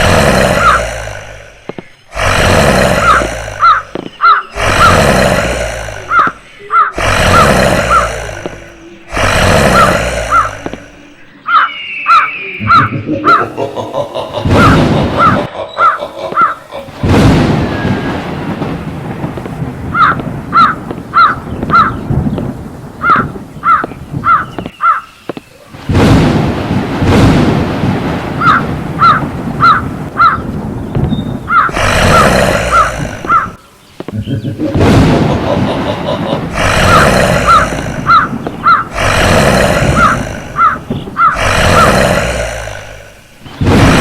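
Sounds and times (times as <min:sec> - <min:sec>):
hissing rushing noise: 0:00.0 - 0:11.2, 0:13.1 - 0:44.0
crow cawing: 0:03.0 - 0:04.9, 0:06.1 - 0:08.1, 0:11.5 - 0:13.4, 0:14.6 - 0:16.7, 0:19.9 - 0:22.1, 0:23.0 - 0:25.2, 0:28.4 - 0:30.5, 0:31.5 - 0:33.6, 0:36.0 - 0:39.1, 0:40.0 - 0:41.9
thunder cracks and rumbles: 0:13.2 - 0:24.7, 0:25.7 - 0:33.6, 0:34.5 - 0:44.0.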